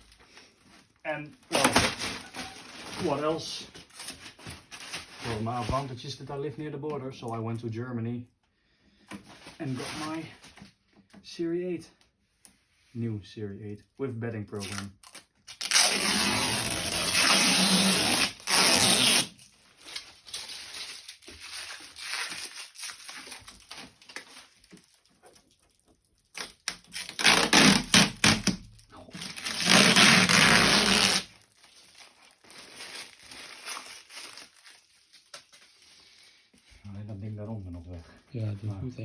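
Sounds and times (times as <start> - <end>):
packaging ripping and rustling: 0.0 - 5.9, 14.5 - 36.4.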